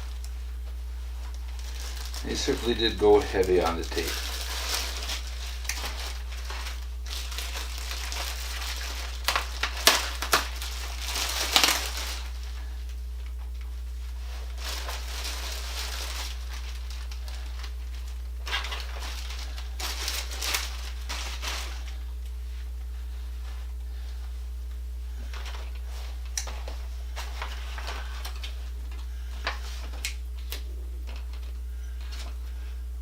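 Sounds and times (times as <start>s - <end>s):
plastic wrapping crinkling: 0.0s - 33.0s
packing tape peeling and tearing: 1.4s - 12.4s, 18.4s - 21.8s.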